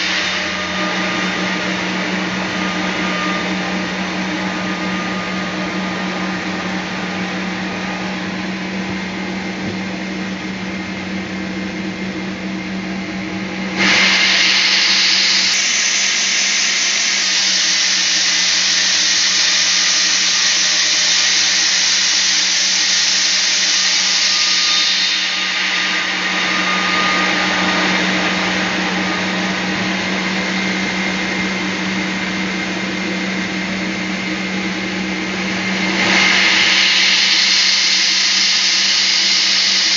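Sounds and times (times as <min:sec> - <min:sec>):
bandsaw running: 0:00.0 - 0:10.8, 0:13.7 - 0:39.9.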